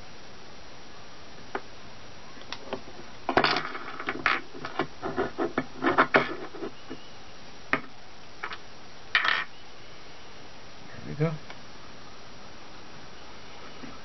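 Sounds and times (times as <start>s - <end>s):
pipe cleaners scratching and rubbing: 3.6s - 6.8s.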